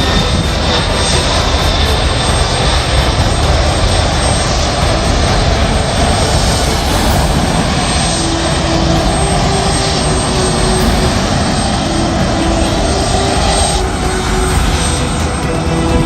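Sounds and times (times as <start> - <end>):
aircraft engines running: 0.0 - 16.0.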